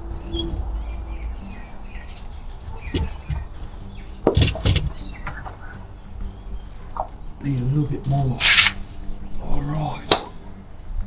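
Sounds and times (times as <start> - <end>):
small birds chirping: 0.0 - 11.0
knocks and clunks of fuel tank: 0.4 - 7.2.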